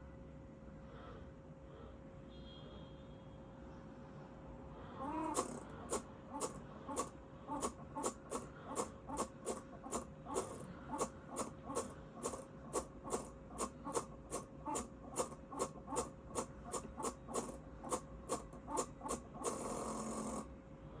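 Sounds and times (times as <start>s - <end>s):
faint steady tone: 0.0s - 5.0s.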